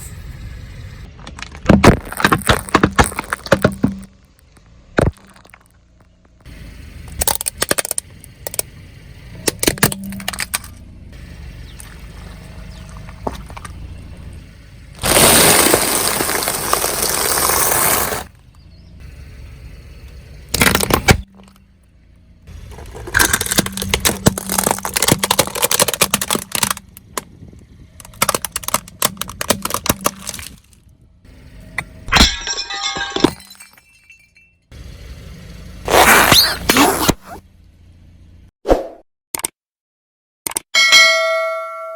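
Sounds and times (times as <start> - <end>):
objects crushed under car tyres: 1.1 - 6.5, 15.0 - 18.4, 20.5 - 21.7, 22.5 - 31.0, 31.7 - 34.6.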